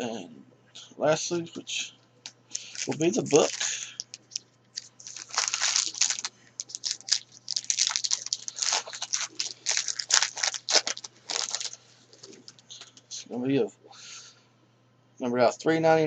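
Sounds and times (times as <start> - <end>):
wrapper tearing and crinkling: 2.5 - 12.6.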